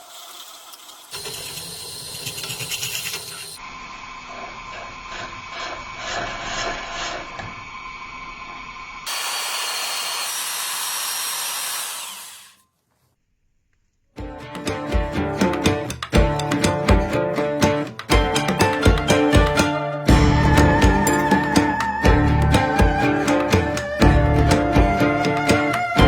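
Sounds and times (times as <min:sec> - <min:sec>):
wood lathe turning: 0:00.0 - 0:03.6, 0:04.2 - 0:07.9, 0:09.1 - 0:12.6
music: 0:14.2 - 0:26.0.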